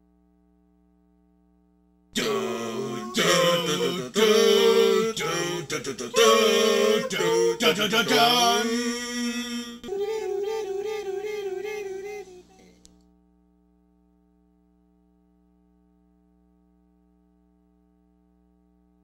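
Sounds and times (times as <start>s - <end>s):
person singing unaccompanied: 2.2s - 12.8s.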